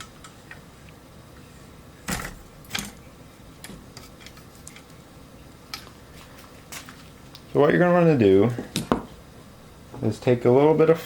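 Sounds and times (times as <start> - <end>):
sharp knocks on workbench: 8.8 - 9.1.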